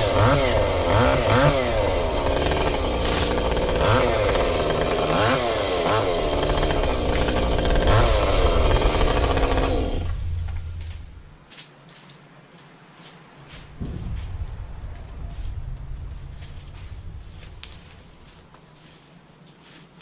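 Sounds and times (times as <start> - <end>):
chainsaw revving: 0.0 - 11.2.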